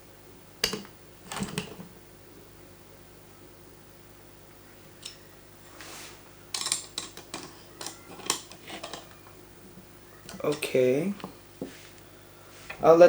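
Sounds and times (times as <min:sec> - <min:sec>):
plastic parts clicking and rattling: 0:00.6 - 0:01.9, 0:06.5 - 0:11.4.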